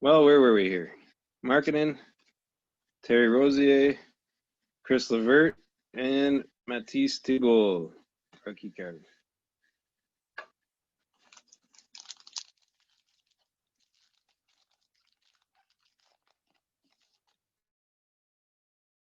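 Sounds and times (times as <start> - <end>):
cards rustling and ticking: 11.1 - 17.5
foil wrapper crinkling: 11.1 - 17.5.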